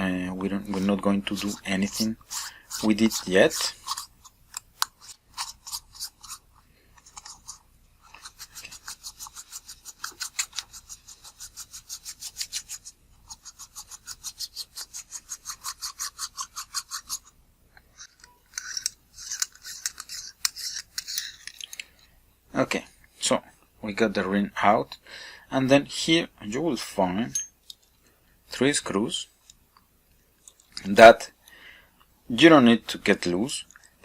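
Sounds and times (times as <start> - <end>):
rough scraping of ring: 0.5 - 21.8.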